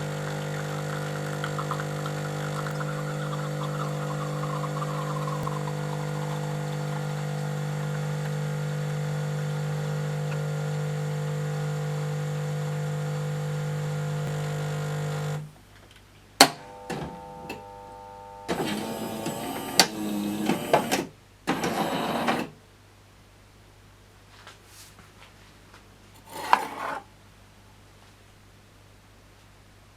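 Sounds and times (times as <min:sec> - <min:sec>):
espresso machine working bursts: 0:00.0 - 0:15.4, 0:16.5 - 0:22.5
espresso machine motor hum: 0:00.0 - 0:15.5, 0:16.5 - 0:22.4.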